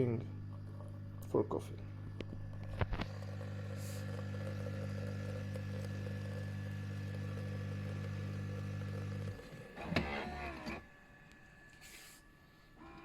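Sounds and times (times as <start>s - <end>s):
coffee machine humming: 0.0s - 13.0s.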